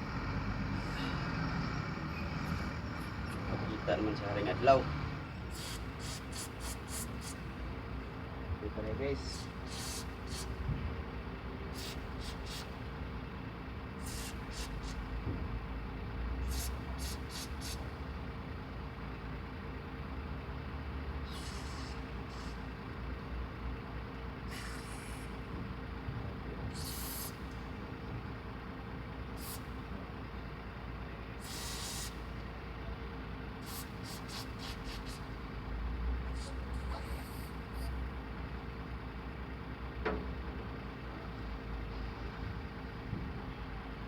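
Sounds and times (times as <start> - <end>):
short hisses: 5.5 - 7.5, 9.3 - 10.6, 11.8 - 12.8, 14.0 - 15.1, 16.5 - 17.9, 21.3 - 22.6, 24.5 - 25.4, 26.8 - 27.5, 29.4 - 29.7, 31.4 - 32.3, 33.6 - 35.4.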